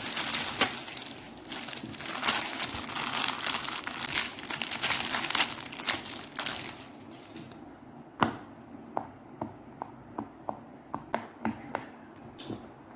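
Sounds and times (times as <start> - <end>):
plastic packaging crinkling: 0.0 - 7.5.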